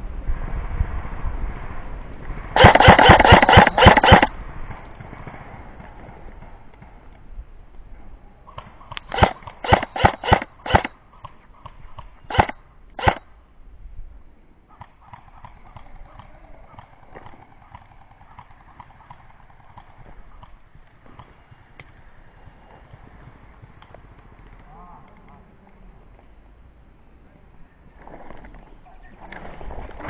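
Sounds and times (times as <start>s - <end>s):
airsoft guns firing: 2.6s - 7.3s, 8.5s - 13.3s, 14.8s - 22.2s.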